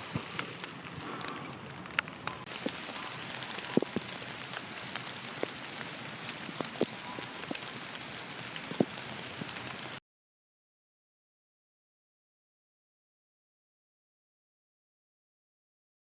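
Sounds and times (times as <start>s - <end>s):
rain falling: 0.0s - 10.0s.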